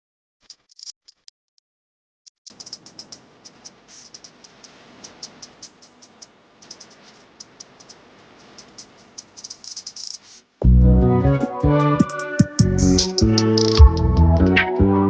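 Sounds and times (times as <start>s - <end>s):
steady rubbing hiss: 2.5s - 10.6s, 12.7s - 13.8s.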